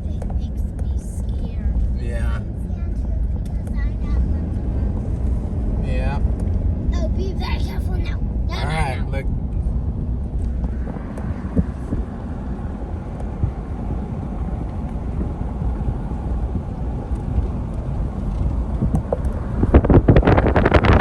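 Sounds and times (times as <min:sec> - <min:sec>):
truck engine and tyres rumbling: 0:00.0 - 0:21.0
rough crackling noise: 0:09.4 - 0:21.0.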